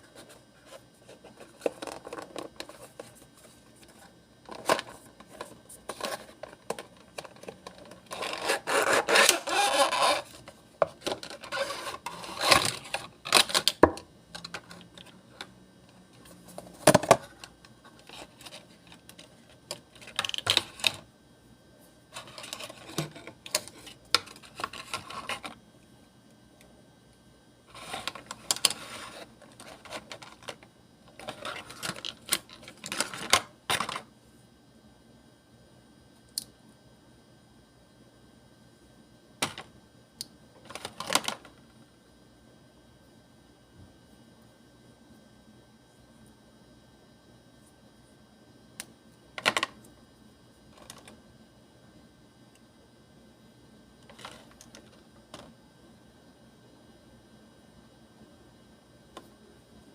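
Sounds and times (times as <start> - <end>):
packaging rustling and tearing: 4.6 - 13.8.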